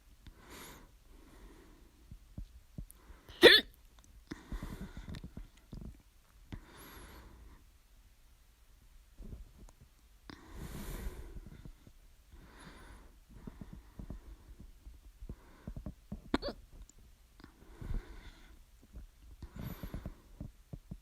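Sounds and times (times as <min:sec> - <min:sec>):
sharp hiccup: 0:03.4 - 0:03.7
person breathing audibly: 0:04.3 - 0:05.9, 0:06.6 - 0:07.6, 0:10.3 - 0:16.0, 0:17.4 - 0:18.6, 0:19.4 - 0:20.5.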